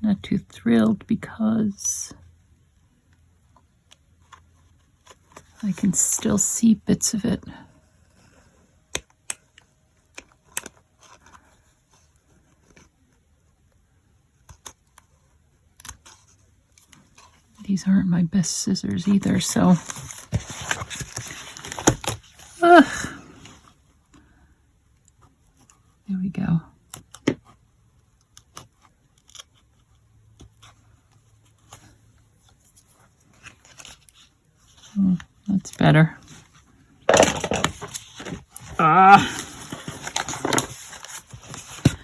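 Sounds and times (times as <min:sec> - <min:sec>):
scissors and paper handled: 0:19.0 - 0:22.6, 0:28.3 - 0:35.0, 0:37.2 - 0:42.0.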